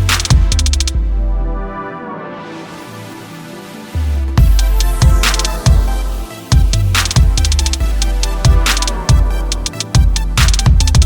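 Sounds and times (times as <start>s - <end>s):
punchy drum beat: 0.0s - 1.0s, 4.4s - 11.0s
electronic music with heavy bass: 0.0s - 11.0s.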